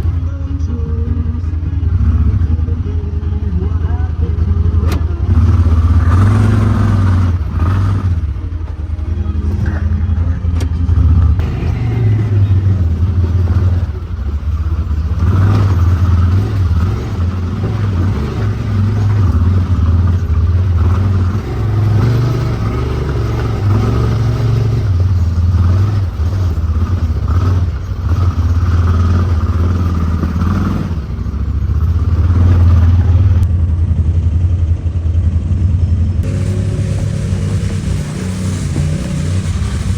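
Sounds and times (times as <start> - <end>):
engine running loudly: 0.0 - 39.9.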